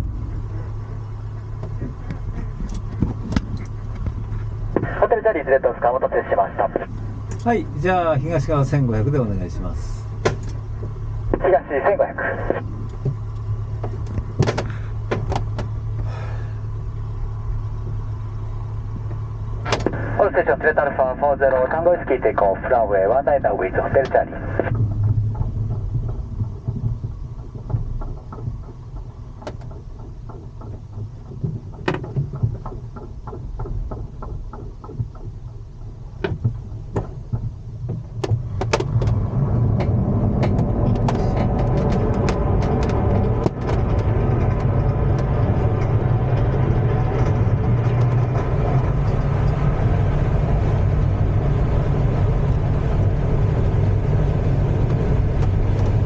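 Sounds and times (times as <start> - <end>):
plane engine droning: 0.0 - 56.0
airframe clicks and knocks: 1.5 - 4.5, 10.2 - 11.0, 12.7 - 16.1, 24.7 - 49.6.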